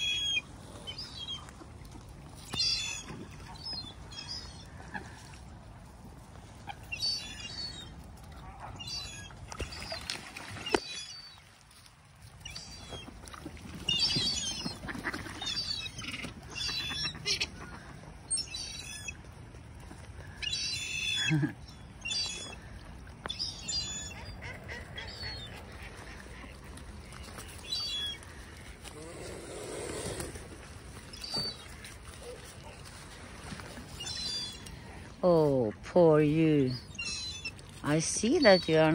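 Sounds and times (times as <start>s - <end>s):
waterbirds calling: 0.0s - 38.9s.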